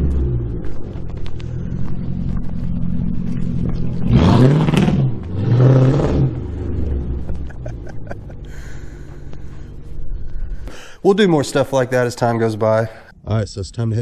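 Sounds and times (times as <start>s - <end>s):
car engine revving and idling: 0.0s - 10.7s.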